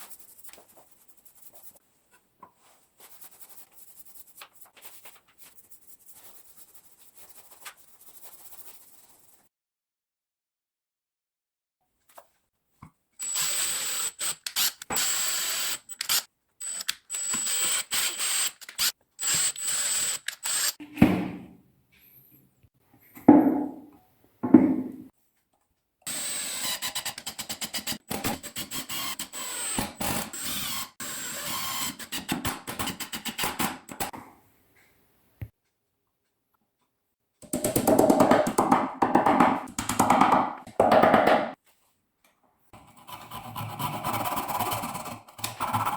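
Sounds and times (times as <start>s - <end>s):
power drill bursts: 13.2s - 20.8s, 26.1s - 27.1s, 28.5s - 32.0s.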